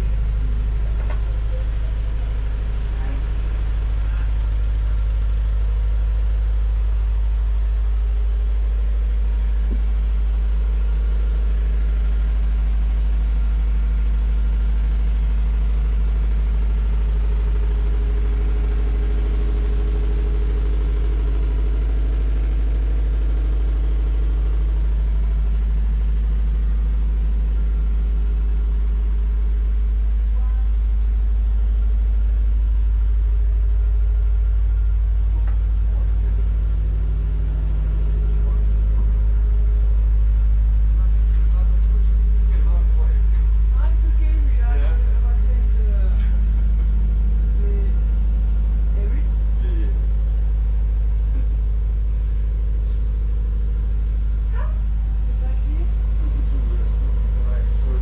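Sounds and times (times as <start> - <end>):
engine running steadily: 0.0 - 58.0.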